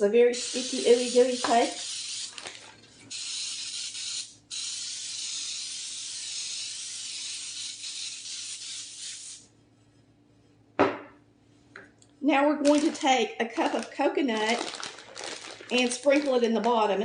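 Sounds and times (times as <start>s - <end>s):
aerosol spray hissing: 0.4s - 2.4s, 3.1s - 9.4s.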